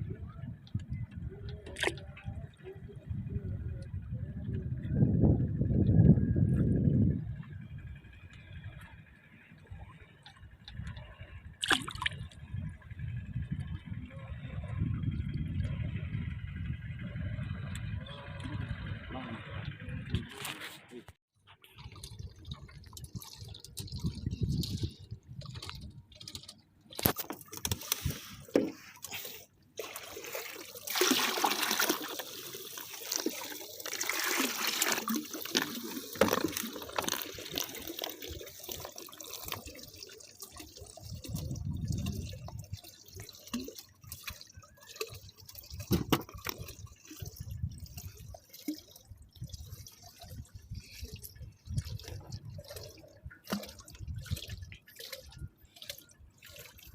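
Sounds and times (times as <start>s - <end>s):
water splashing and dripping: 0.6s - 2.3s, 7.3s - 14.0s, 21.5s - 56.9s.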